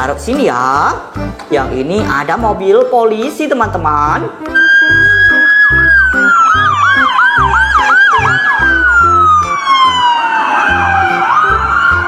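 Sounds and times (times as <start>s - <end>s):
background music: 0.0s - 12.0s
police siren yelp and wail: 4.6s - 12.0s.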